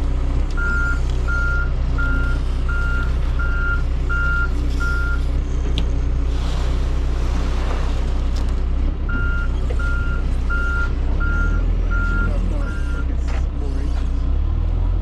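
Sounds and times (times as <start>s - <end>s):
heavy vehicle engine running: 0.0s - 15.0s
reversing alarm beeping: 0.6s - 5.3s, 9.1s - 13.1s.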